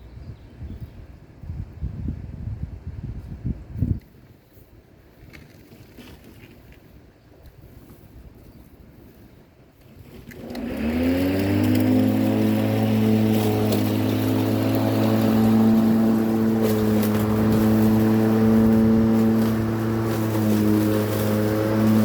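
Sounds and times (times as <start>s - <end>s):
lawn mower engine starting: 10.0s - 22.0s.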